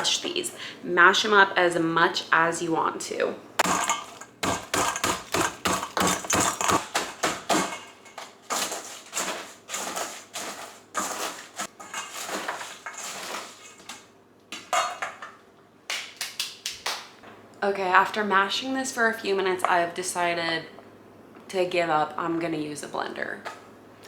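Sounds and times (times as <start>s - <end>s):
cookies crushed in a bowl: 3.6s - 14.0s.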